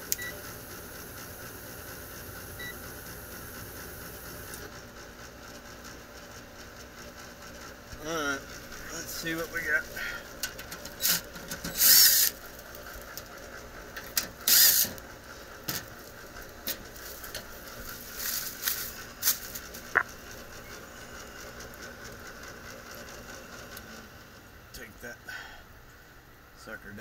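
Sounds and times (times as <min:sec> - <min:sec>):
hand tools ratcheting and scraping: 0:08.1 - 0:15.0, 0:15.6 - 0:20.0.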